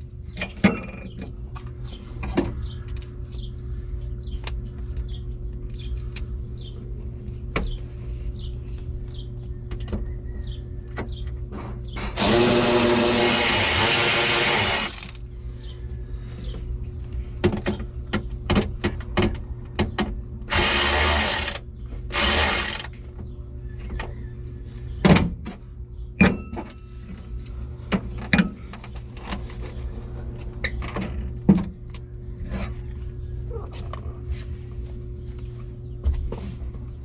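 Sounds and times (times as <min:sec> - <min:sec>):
power drill running: 0:12.2 - 0:15.2, 0:20.5 - 0:22.9.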